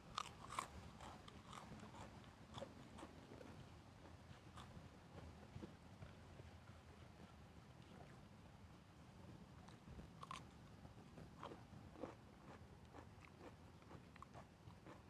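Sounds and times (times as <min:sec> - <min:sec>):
person chewing crunchy food: 0:00.1 - 0:03.1, 0:10.2 - 0:10.4, 0:11.4 - 0:15.0.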